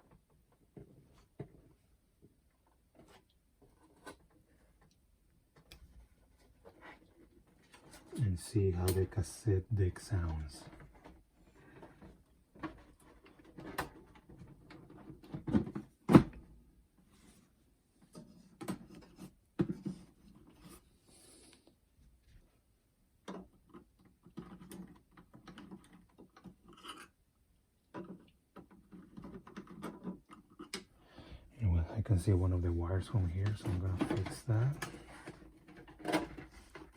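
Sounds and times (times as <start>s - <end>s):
clicks and knocks handling boombox: 33.4s - 36.9s.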